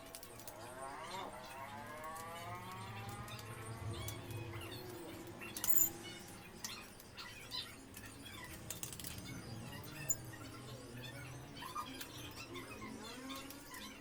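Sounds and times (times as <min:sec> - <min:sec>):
metal bed frame parts clinking: 0:05.6 - 0:06.0.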